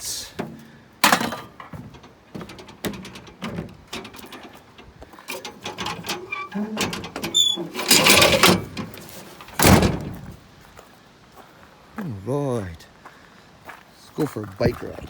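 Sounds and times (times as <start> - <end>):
objects clattering: 0.4 - 10.4
short high squeaks: 3.6 - 9.7.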